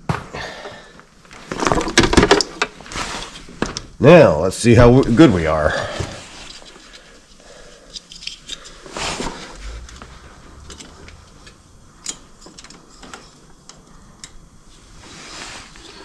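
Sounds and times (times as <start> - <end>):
faint handling clicks and knocks: 9.8 - 14.4.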